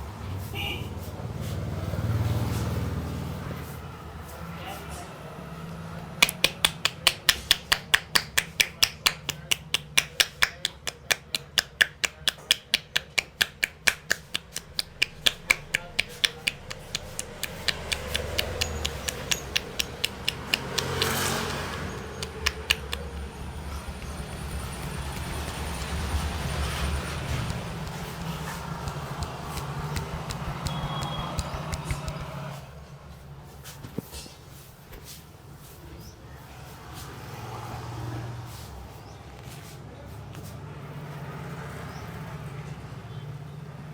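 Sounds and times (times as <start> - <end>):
street noise: 0.0 - 43.9
rhythmic hand slaps on head: 6.2 - 32.6.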